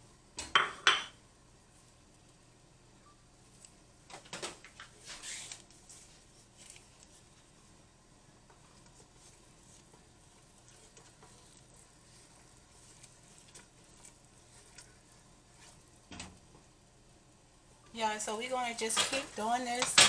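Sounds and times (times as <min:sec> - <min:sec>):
roux sizzling in a pot: 0:04.9 - 0:20.0.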